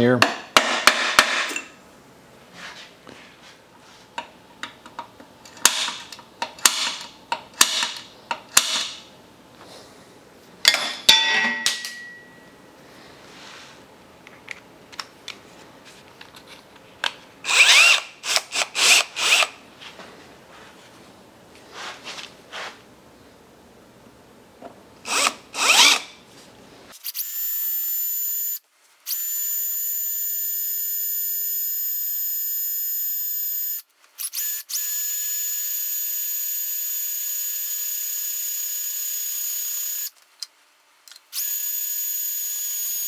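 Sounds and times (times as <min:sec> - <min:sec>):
tools clinking: 0:10.6 - 0:12.5
power drill drilling: 0:17.5 - 0:19.5, 0:25.1 - 0:26.1, 0:27.0 - 0:40.1, 0:41.4 - 0:43.0.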